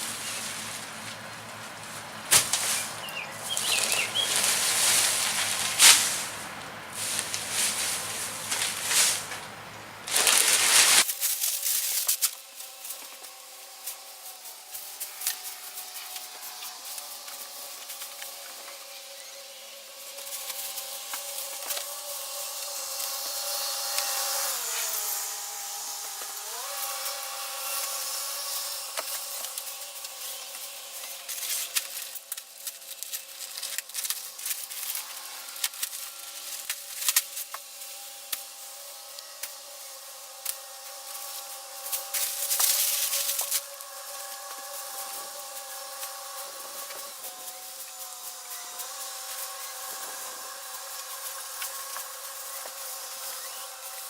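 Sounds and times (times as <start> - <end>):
dry bedding rustling: 0.0 - 18.4, 26.6 - 38.0, 40.6 - 54.0
faint steady hum: 0.0 - 54.0
scratchy ticks and scrapes: 27.8 - 37.7, 40.4 - 54.0.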